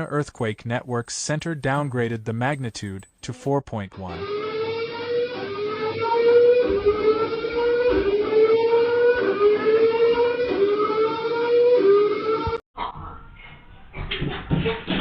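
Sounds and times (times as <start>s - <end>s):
background noise: 0.0s - 4.2s, 12.8s - 15.0s
rising alarm siren tone: 4.0s - 12.6s.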